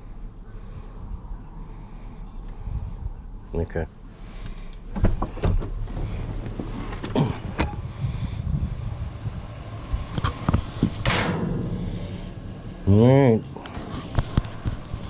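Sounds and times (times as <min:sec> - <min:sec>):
vehicle engine hum: 0:00.0 - 0:15.0
knocks and clunks: 0:04.8 - 0:07.8, 0:09.8 - 0:12.2.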